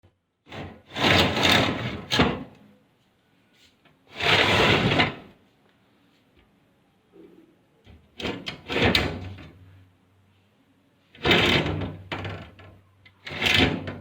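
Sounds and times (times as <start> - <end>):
glass sliding door rolling: 0.5 - 2.5, 4.1 - 5.3, 8.2 - 9.6, 11.2 - 12.6, 13.2 - 14.0.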